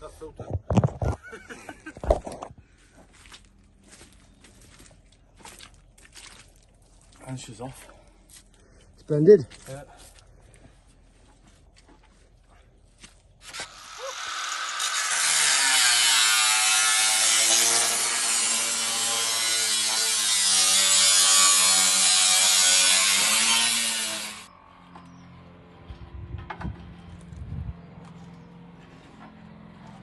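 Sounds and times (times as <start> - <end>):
angle grinder cutting metal: 13.4 - 24.5.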